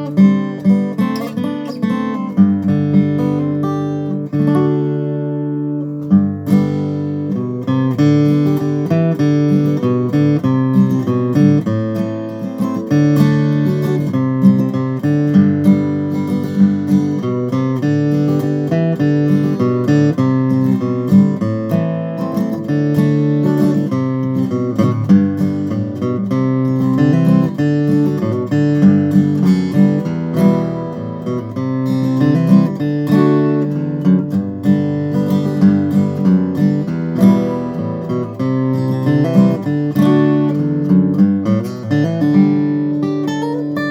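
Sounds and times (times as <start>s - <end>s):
acoustic guitar chords: 0.0s - 43.9s.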